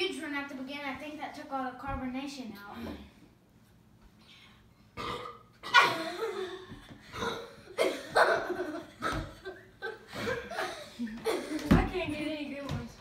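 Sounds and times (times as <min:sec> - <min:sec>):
people burping: 0:05.0 - 0:11.5
laughter: 0:05.8 - 0:11.7.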